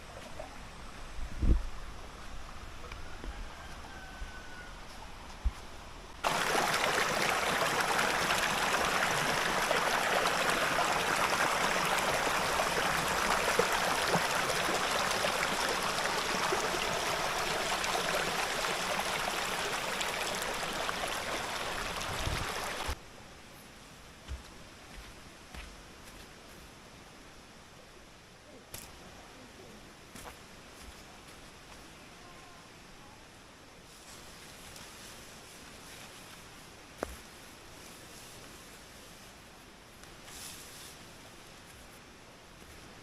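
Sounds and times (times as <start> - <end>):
river water rushing over rocks: 6.2 - 23.0.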